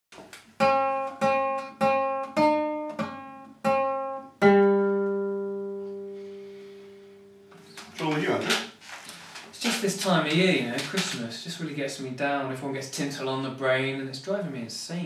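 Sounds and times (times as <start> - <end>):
guitar strumming chords: 0.6 - 8.8.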